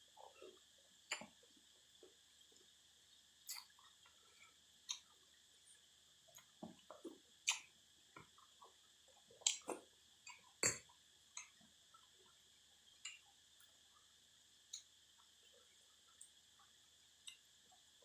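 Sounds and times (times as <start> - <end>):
chewing and crunching food: 0.0 - 18.0
mouth clicks and wet smacks: 1.1 - 1.3, 3.4 - 3.9, 4.9 - 5.1, 6.3 - 11.6.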